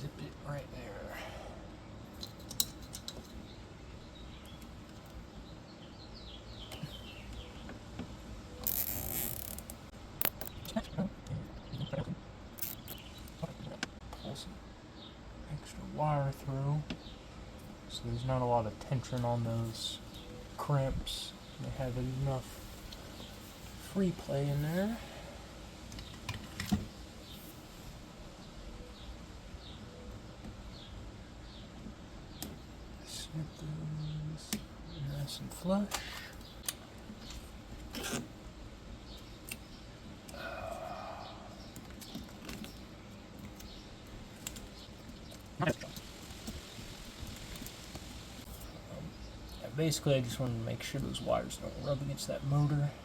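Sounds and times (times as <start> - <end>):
zip tie ratcheting: 8.6 - 10.5, 12.6 - 13.1, 37.8 - 38.3
quiet handling noise: 25.9 - 27.6, 41.6 - 48.9.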